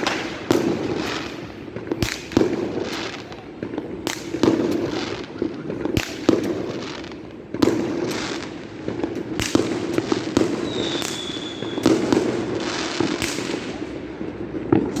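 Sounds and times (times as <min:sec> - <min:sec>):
firework bangs: 0:00.0 - 0:15.0
firework crackling: 0:00.0 - 0:15.0
high firework whistle: 0:09.4 - 0:13.8.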